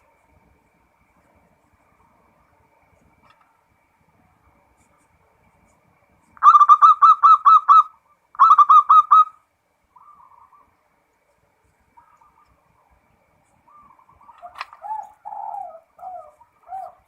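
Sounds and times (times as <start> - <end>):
dove cooing: 6.4 - 10.8, 12.0 - 12.9, 13.6 - 17.0.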